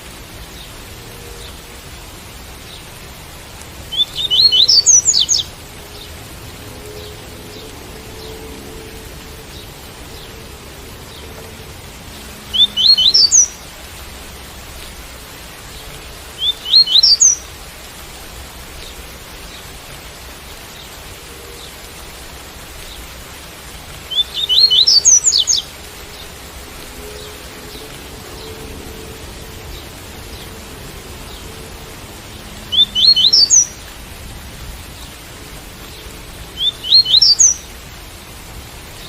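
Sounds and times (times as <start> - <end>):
rain hiss: 0.0 - 39.0
bird singing high rising notes: 3.9 - 5.5, 12.5 - 13.6, 16.4 - 17.4, 24.1 - 26.2, 32.7 - 33.8, 36.6 - 37.6.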